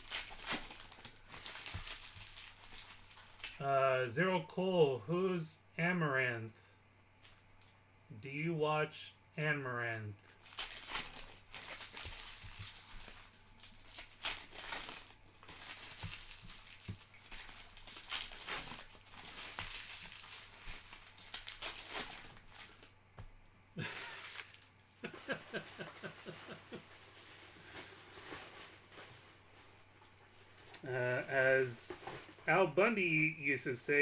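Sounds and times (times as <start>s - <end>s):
plastic wrappers crinkling and tearing: 0.0s - 3.6s, 7.2s - 7.8s, 10.2s - 32.5s.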